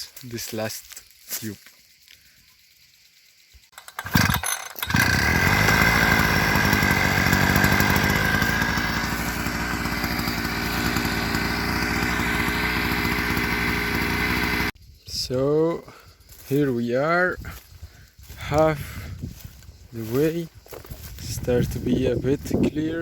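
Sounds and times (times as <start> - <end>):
petrol brush cutter engine: 3.7 - 14.8.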